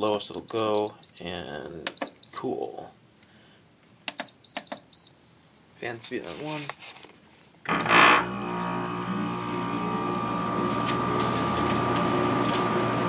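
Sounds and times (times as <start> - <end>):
air conditioner running: 7.7 - 13.0.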